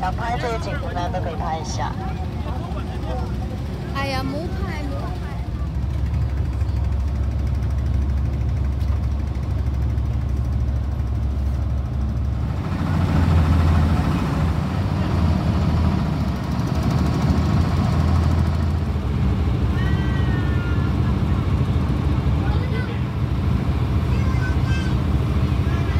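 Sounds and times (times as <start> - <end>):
boat engine humming: 0.0 - 25.9.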